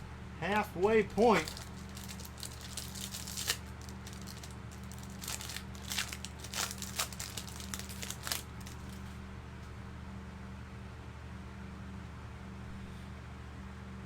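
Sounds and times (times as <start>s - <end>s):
low electrical hum: 0.0s - 14.0s
plastic wrapping crinkling: 0.5s - 9.2s.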